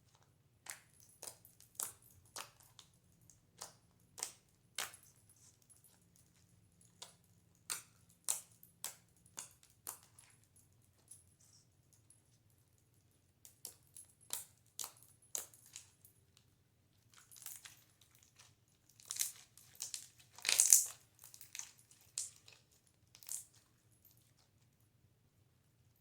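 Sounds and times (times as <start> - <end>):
slime stirred clicking and crackling: 0.1 - 10.5, 17.0 - 23.6.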